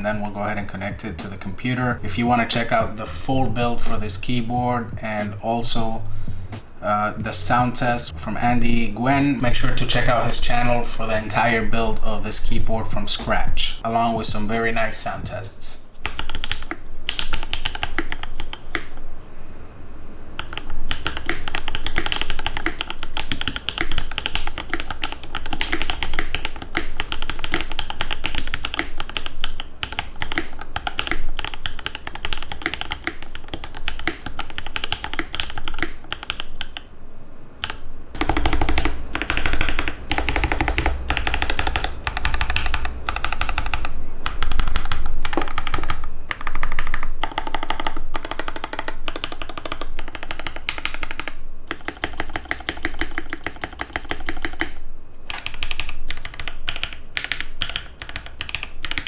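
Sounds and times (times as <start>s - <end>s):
fast typing on mechanical keyboard: 16.0s - 19.0s, 20.4s - 36.9s, 37.6s - 59.0s.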